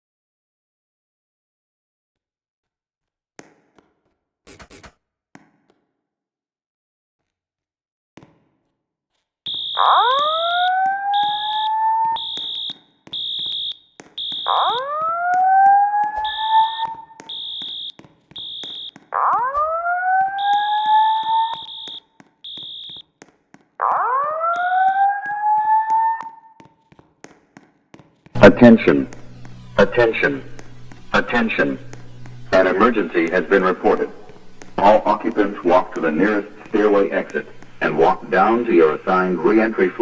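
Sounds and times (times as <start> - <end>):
high-pitched pulsing beep: 9.5 - 14.8, 16.2 - 18.9, 20.4 - 23.0
fire alarm whoop tone: 9.5 - 23.0, 23.8 - 26.6.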